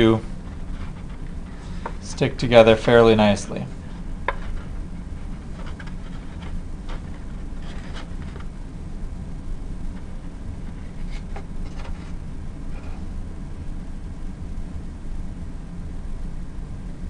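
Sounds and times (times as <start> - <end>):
low background hum: 0.0 - 17.0
paper taps and rustles: 4.2 - 4.7.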